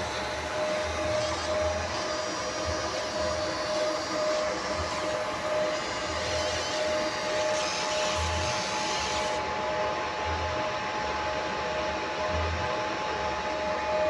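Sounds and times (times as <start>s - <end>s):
engraving machine whirring hiss: 0.0s - 9.5s.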